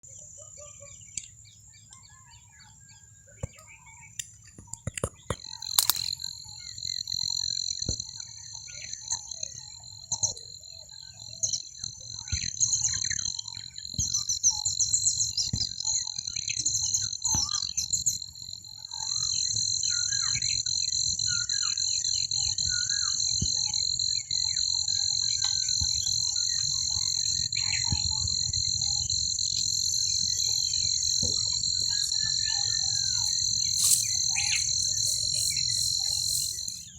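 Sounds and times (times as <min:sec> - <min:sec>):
sharp clicks: 0:04.2 - 0:06.2, 0:31.8 - 0:36.9
high-pitched insect drone: 0:05.6 - 0:13.5, 0:18.4 - 0:36.9
birds chirping and calling: 0:30.2 - 0:36.9.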